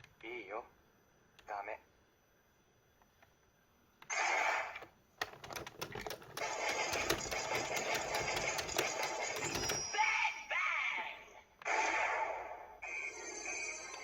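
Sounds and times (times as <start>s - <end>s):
sharp clicks: 5.2s - 9.9s.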